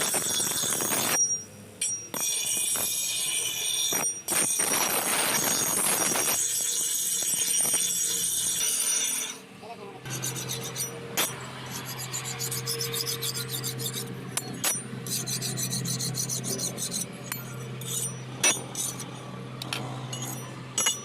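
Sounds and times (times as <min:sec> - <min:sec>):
rasping strokes on steel: 0:00.0 - 0:09.5, 0:10.1 - 0:21.0
steady low hum: 0:09.5 - 0:21.0.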